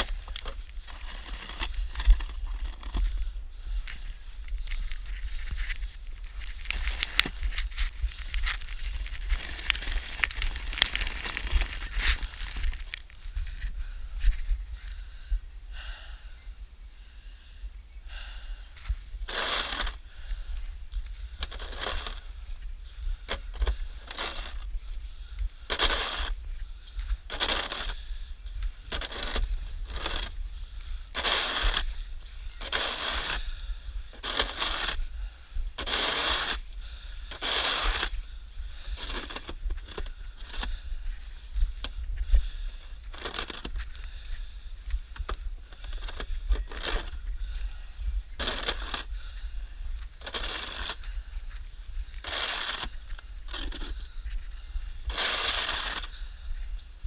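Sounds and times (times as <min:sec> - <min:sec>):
snow shovel scraping through snow: 0:00.0 - 0:03.1, 0:04.6 - 0:13.7, 0:19.2 - 0:20.0, 0:21.4 - 0:22.4, 0:23.3 - 0:24.8, 0:25.7 - 0:30.4, 0:31.1 - 0:35.1, 0:35.8 - 0:40.8, 0:42.5 - 0:44.2, 0:45.9 - 0:47.7, 0:48.3 - 0:49.2, 0:50.1 - 0:51.4, 0:52.0 - 0:56.2
steady low rumble: 0:00.0 - 0:57.0.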